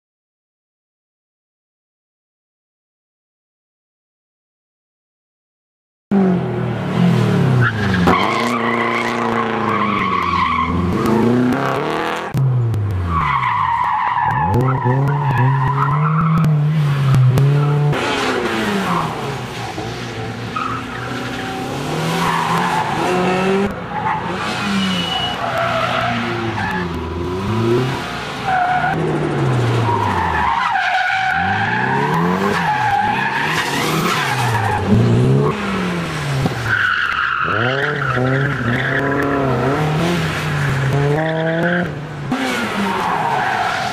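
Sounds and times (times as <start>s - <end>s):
engine revving: 10.6s - 12.8s, 21.1s - 25.2s, 26.1s - 28.1s, 37.4s - 42.9s.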